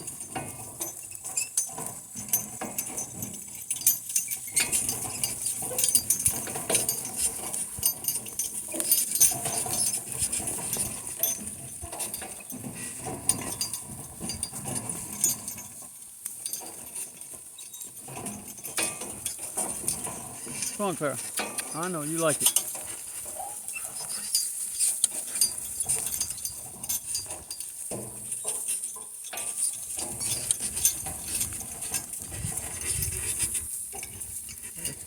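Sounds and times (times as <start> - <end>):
wagon clicks and knocks: 0.0 - 35.0.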